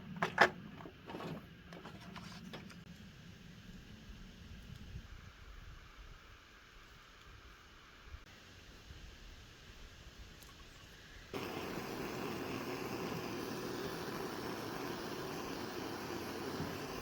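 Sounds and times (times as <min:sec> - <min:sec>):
heat gun blowing: 0:11.4 - 0:17.0.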